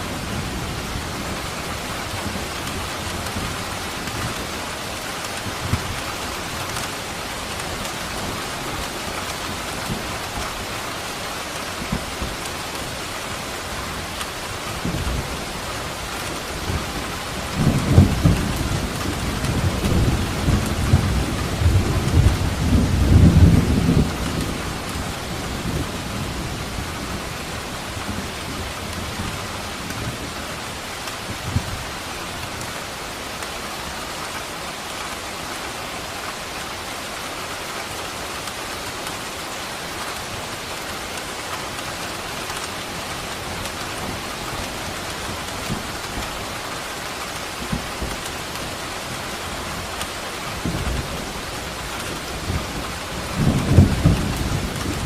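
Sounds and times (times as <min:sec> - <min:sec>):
heavy rain: 0:00.0 - 0:55.0
thunder rumble: 0:50.6 - 0:55.0.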